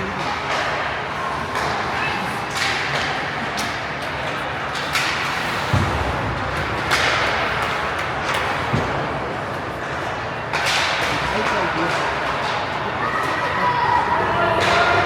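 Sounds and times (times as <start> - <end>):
steady rink hum: 0.0 - 15.0
thud against the boards: 5.6 - 7.7.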